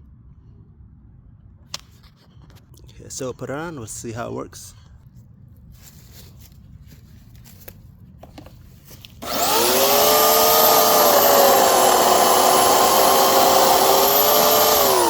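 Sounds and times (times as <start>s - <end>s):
chainsaw starting and running: 9.2s - 15.0s.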